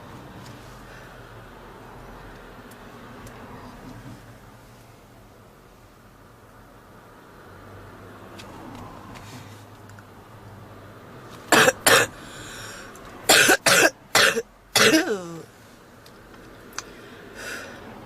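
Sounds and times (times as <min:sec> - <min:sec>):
woman coughing: 0:11.5 - 0:12.1, 0:13.3 - 0:15.5.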